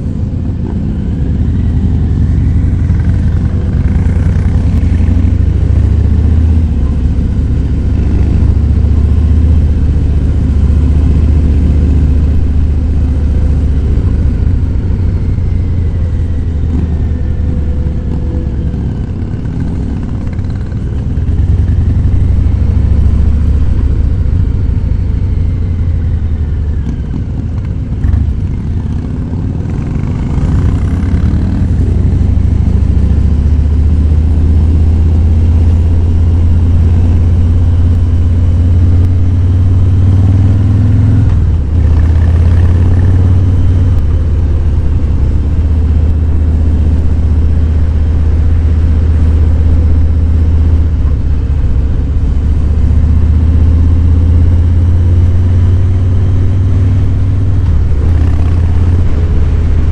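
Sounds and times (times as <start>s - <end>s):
motorcycle engine rumbling: 0.0s - 59.9s.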